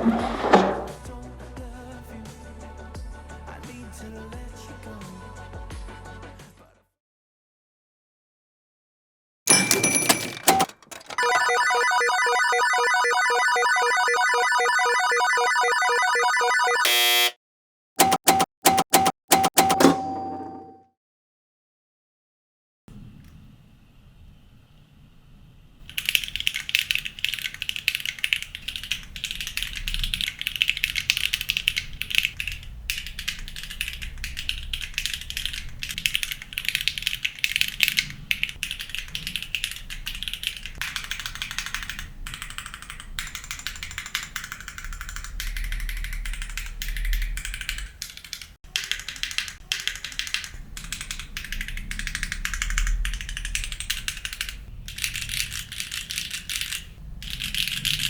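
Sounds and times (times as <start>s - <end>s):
mechanical keyboard typing: 9.5s - 16.8s, 18.0s - 20.0s, 25.9s - 58.0s.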